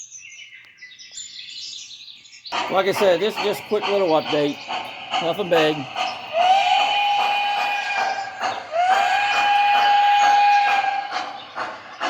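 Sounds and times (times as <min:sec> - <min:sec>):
regular ticking: 0:02.5 - 0:12.0
model train steam whistle: 0:06.4 - 0:11.2.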